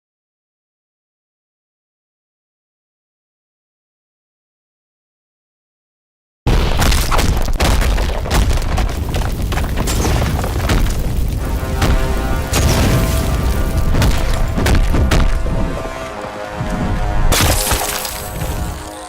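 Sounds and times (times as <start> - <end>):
fight impact sound effects: 9.9 - 16.1
dramatic orchestral music: 11.1 - 19.0.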